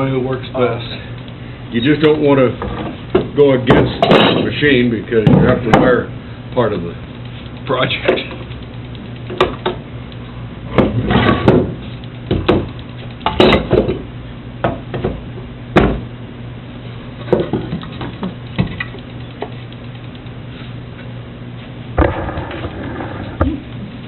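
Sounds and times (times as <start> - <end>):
steady low hum: 0.0 - 24.0
wood and tools knocking on workbench: 10.8 - 12.6, 15.8 - 16.0.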